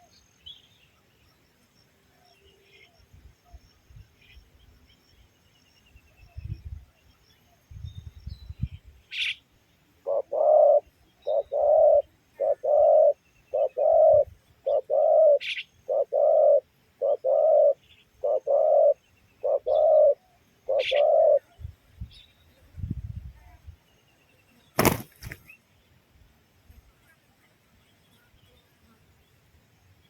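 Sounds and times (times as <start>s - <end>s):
dove cooing: 10.0s - 21.4s.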